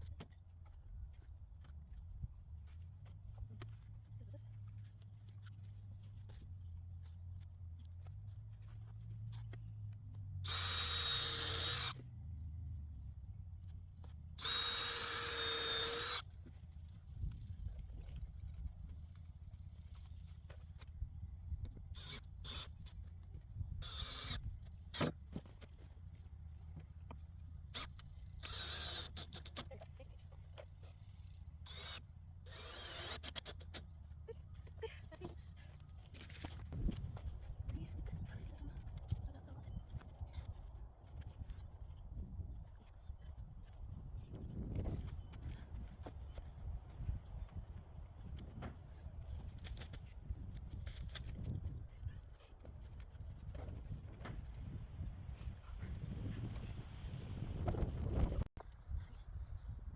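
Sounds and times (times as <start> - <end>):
power drill whine: 10.5 - 12.0, 14.4 - 16.2, 23.8 - 24.4, 27.8 - 29.5, 31.7 - 33.5.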